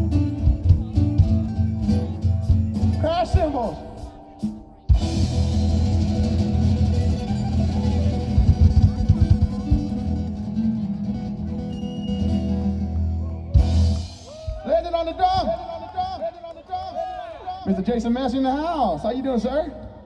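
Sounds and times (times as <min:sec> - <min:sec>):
drum kit: 0:00.0 - 0:10.9, 0:11.6 - 0:15.2
live band guitar music: 0:00.0 - 0:15.7.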